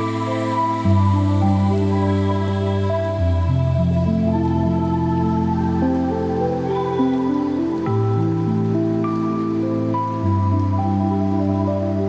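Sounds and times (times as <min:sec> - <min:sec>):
calm new-age music: 0:00.0 - 0:12.0.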